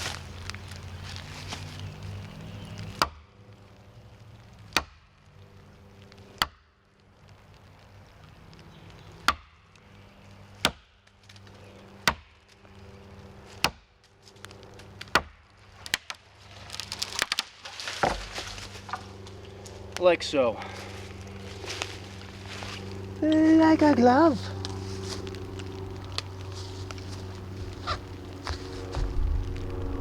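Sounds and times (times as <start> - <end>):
axe chopping sapling: 2.9 - 3.3, 4.7 - 5.0, 9.2 - 9.6, 10.6 - 10.9, 12.0 - 12.4, 15.0 - 19.1.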